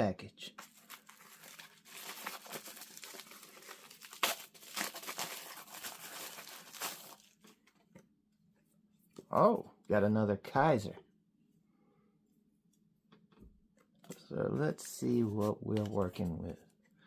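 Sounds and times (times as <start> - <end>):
packaging crinkling and tearing: 0.6 - 7.6.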